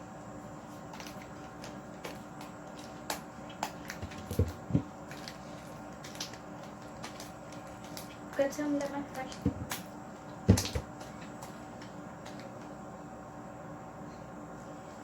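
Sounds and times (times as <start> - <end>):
spatula stirring slime: 0.6 - 9.8
knocks against plastic container: 10.5 - 10.9.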